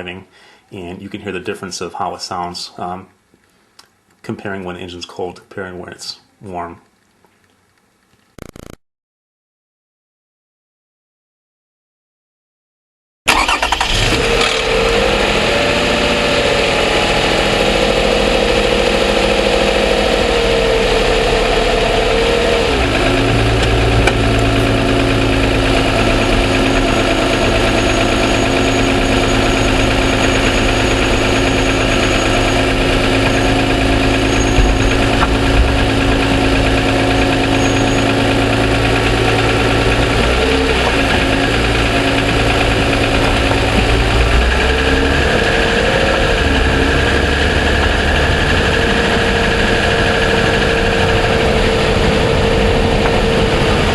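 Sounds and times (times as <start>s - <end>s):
engine ticking: 13.3s - 15.4s, 16.7s - 53.9s
car engine idling: 13.3s - 53.9s.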